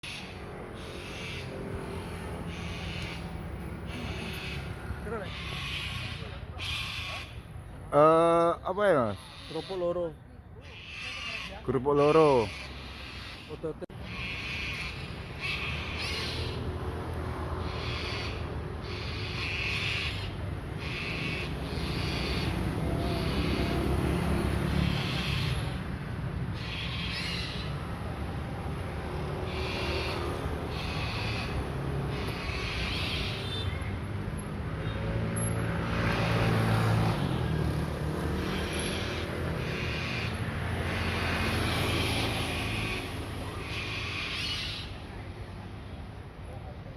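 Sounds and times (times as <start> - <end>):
cockatoo screeching: 0.0 - 1.7, 2.4 - 7.4, 9.0 - 10.0, 10.6 - 16.7, 17.6 - 25.8, 26.5 - 28.1, 29.2 - 33.9, 38.4 - 45.1
street traffic: 0.0 - 46.9.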